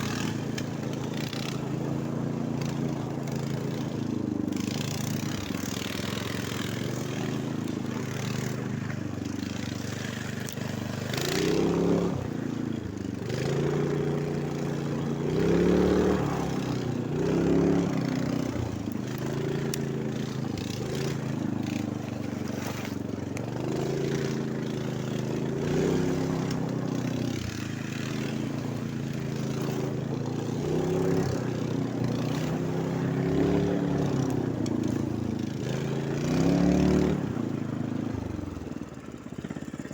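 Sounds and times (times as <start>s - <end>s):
snowmobile engine revving: 0.0s - 39.7s.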